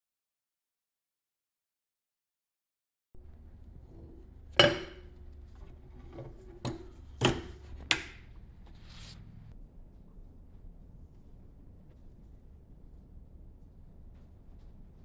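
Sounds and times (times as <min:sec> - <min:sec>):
hard objects knocking and clanking: 0:03.2 - 0:08.8
low steady hum: 0:03.2 - 0:09.6
soft rubbing swish: 0:08.6 - 0:09.5.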